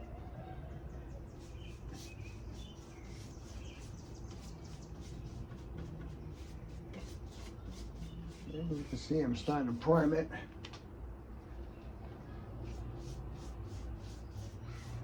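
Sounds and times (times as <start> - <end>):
birds chirping: 0.8 - 10.1
paintbrush scratching on wood: 1.4 - 10.1, 12.6 - 15.0.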